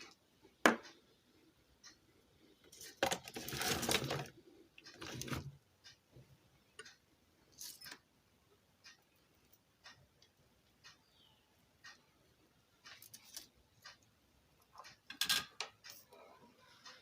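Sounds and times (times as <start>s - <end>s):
scraping and rustling: 2.7s - 5.6s.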